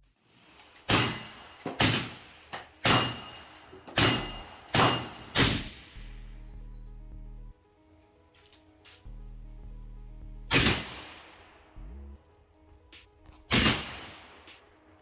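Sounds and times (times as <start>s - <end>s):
background music: 0.2s - 15.0s
loud rifle shots: 0.8s - 6.0s, 10.5s - 11.6s, 13.5s - 14.4s.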